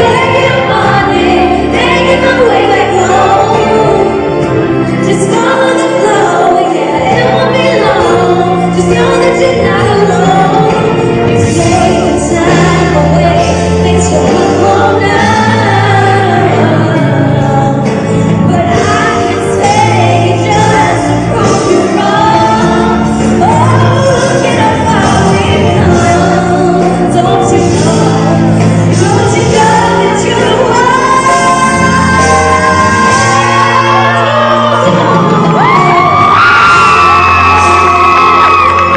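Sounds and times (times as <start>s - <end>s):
band playing: 0.0s - 38.9s
woman singing: 0.0s - 38.9s.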